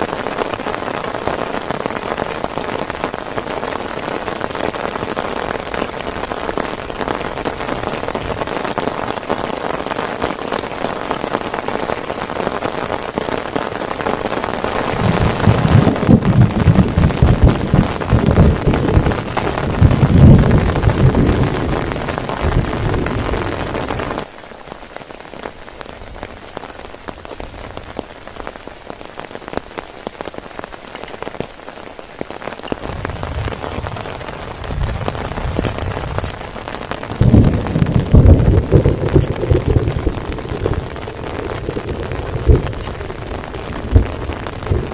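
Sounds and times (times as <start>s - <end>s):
heavy rain: 0.0s - 44.9s
thunder rumbling: 14.4s - 24.3s, 32.7s - 44.9s.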